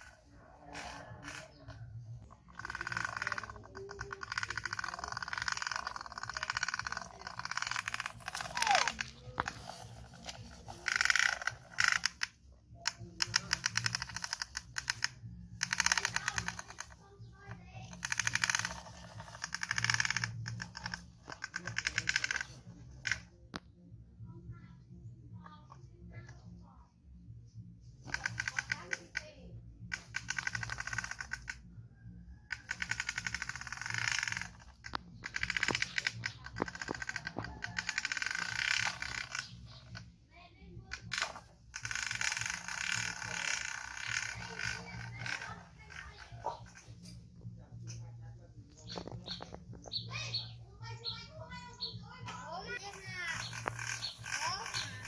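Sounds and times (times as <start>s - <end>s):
toy truck rattling clicks: 0.0s - 23.3s, 28.0s - 31.8s, 32.5s - 40.1s, 40.8s - 47.2s, 52.7s - 55.0s.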